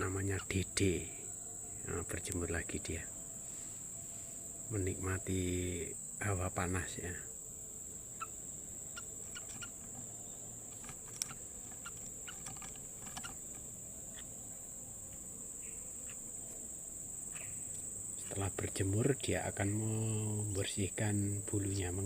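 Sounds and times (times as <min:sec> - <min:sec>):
crickets chirring: 0:00.0 - 0:22.0.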